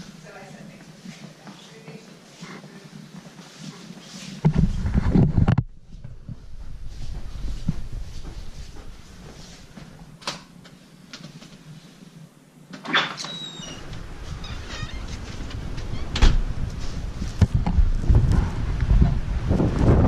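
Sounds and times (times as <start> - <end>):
wind buffeting microphone: 4.4 - 9.3, 13.8 - 20.0
door squeaking open: 12.8 - 16.5.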